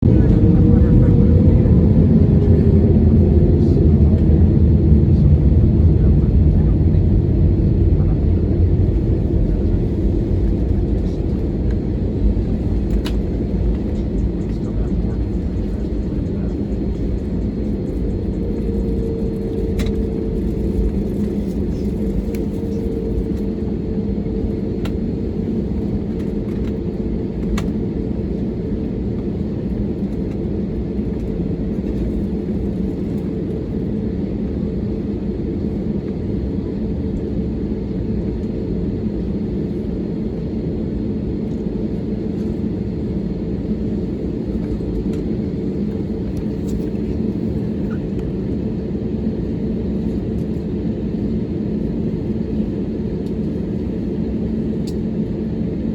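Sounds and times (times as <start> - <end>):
low rumble: 0.0 - 30.4
airplane cabin engine drone: 0.0 - 55.9.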